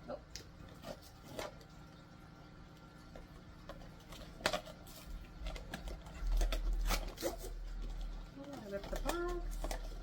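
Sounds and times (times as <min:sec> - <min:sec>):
cardboard packaging clicks and rustles: 0:03.1 - 0:10.0.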